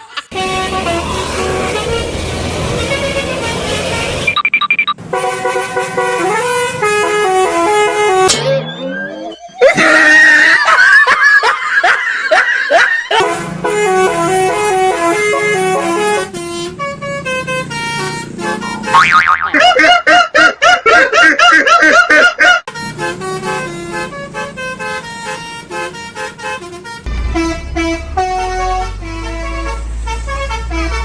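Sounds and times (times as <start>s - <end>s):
multi-tone bus horn playing tunes: 0.1s - 4.4s, 5.0s - 9.3s, 13.1s - 21.1s, 21.9s - 31.0s
harsh wavering horn: 0.3s - 4.3s, 5.1s - 10.0s, 13.1s - 19.6s, 22.7s - 31.0s.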